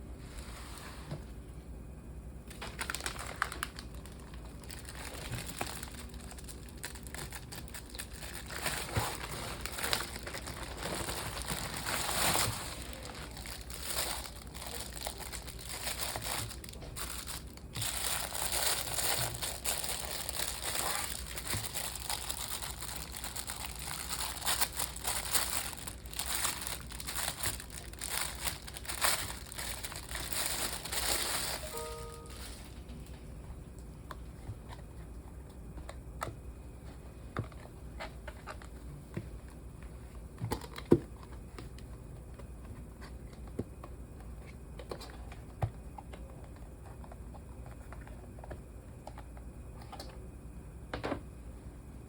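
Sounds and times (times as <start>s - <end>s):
packaging crinkling: 2.5s - 33.2s.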